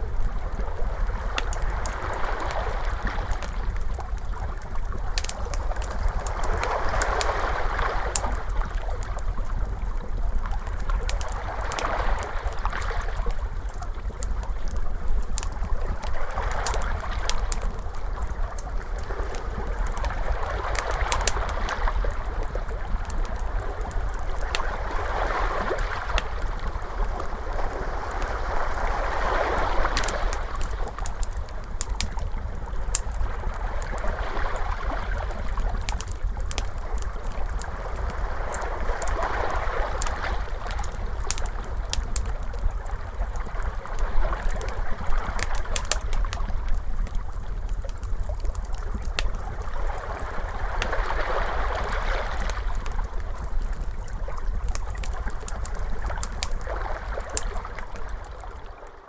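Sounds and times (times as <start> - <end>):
wood fire crackling: 0.0 - 58.8
steady low rumble: 7.6 - 51.9
ocean waves washing in: 22.9 - 31.3.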